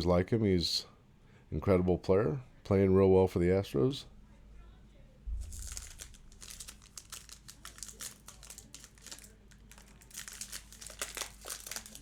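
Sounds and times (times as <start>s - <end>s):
card pack wrapper crinkling: 5.4s - 12.0s.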